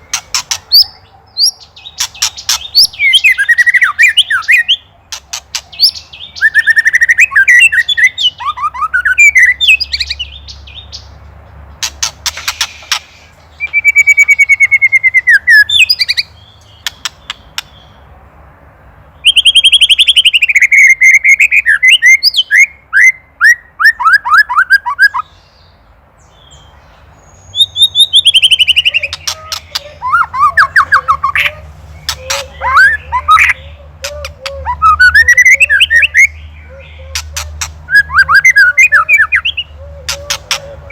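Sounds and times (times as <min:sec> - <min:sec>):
bird singing whistled phrases: 0:02.6 - 0:04.8, 0:05.7 - 0:10.4, 0:13.6 - 0:16.2, 0:19.2 - 0:25.2, 0:27.4 - 0:40.9.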